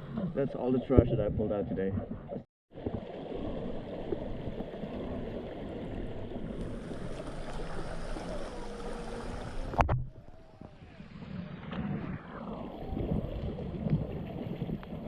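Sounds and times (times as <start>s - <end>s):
river water rushing: 6.6s - 9.8s.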